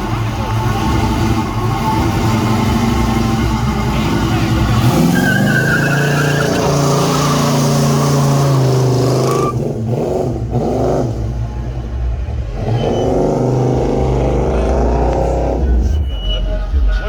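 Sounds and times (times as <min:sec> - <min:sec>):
car engine revving: 0:00.0 - 0:17.0
high squeal: 0:04.9 - 0:09.6, 0:12.6 - 0:13.9, 0:15.7 - 0:17.0.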